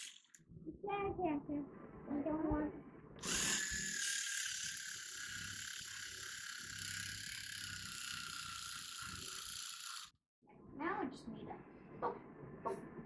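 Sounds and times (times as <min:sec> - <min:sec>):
electric cutter buzzing: 0:00.0 - 0:00.4, 0:03.2 - 0:10.2.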